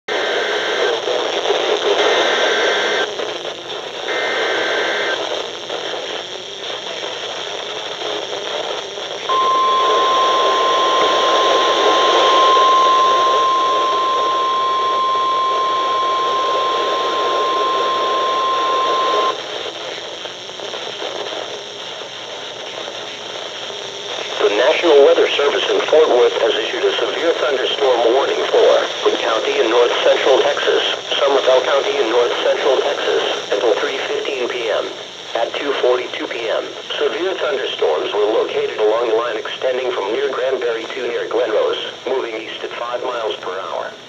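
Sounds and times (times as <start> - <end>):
radio static: 0.1 - 44.0
steady alarm tone: 9.3 - 19.4
warbling two-pitch data bursts: 9.3 - 19.4.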